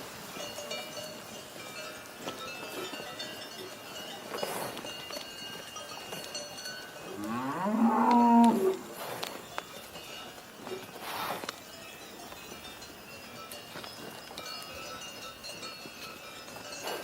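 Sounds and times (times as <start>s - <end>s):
cow mooing: 7.1s - 8.9s.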